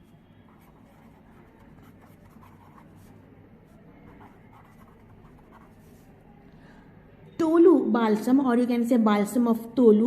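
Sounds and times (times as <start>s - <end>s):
low steady hum: 0.0s - 8.4s
pen scratching handwriting: 0.5s - 3.2s, 4.0s - 6.0s.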